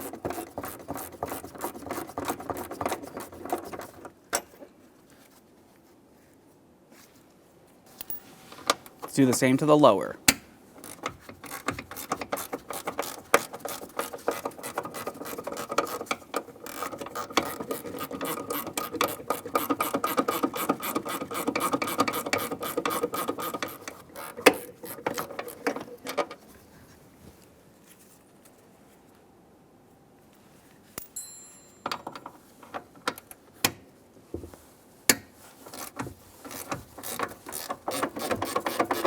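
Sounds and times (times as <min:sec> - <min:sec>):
ratchet tool clicking: 0:10.8 - 0:25.9, 0:35.7 - 0:39.0.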